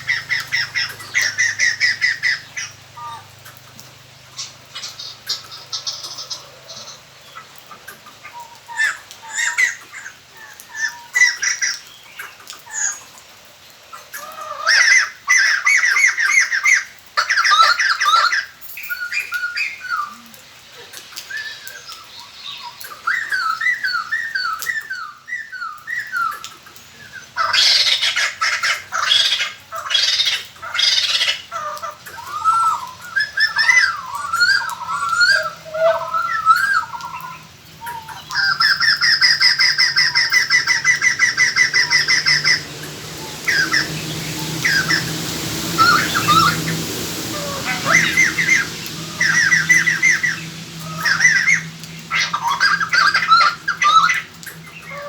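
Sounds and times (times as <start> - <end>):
birds cackling chatter: 0.0 - 13.2, 27.0 - 55.0
bird whistled notes: 32.3 - 55.0.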